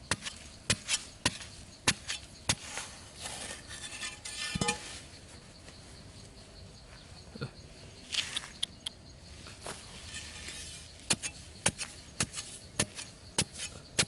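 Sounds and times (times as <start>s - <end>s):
metal tool scraping: 0.2s - 5.0s, 10.0s - 13.8s.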